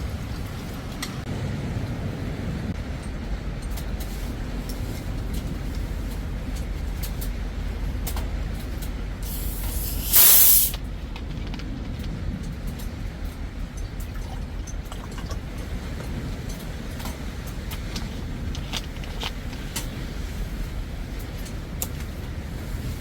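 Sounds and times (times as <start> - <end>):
steady low rumble: 0.0 - 23.0
loud hiss: 9.2 - 10.8.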